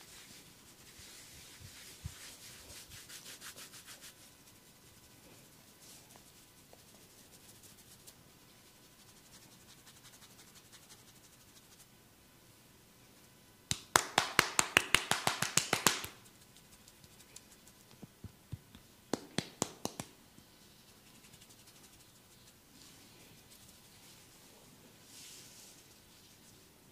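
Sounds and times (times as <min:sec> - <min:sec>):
rapid hand slaps: 0:13.7 - 0:20.2.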